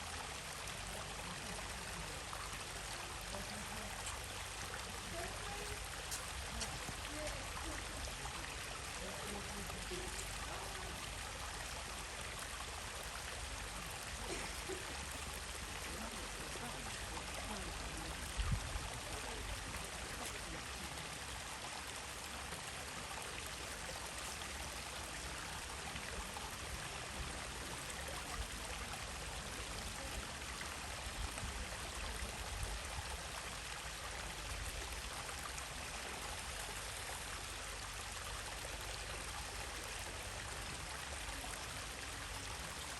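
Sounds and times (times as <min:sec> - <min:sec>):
stream water running over rocks: 0:00.0 - 0:42.9.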